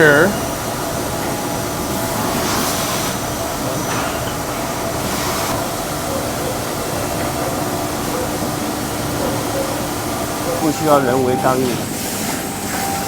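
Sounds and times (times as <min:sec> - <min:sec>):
machinery droning: 0:00.0 - 0:13.0.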